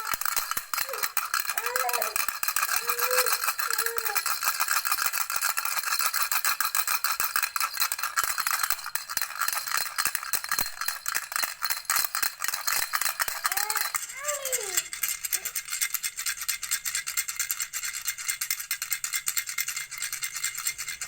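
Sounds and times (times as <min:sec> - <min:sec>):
baby rattle shaken: 0:00.0 - 0:21.0.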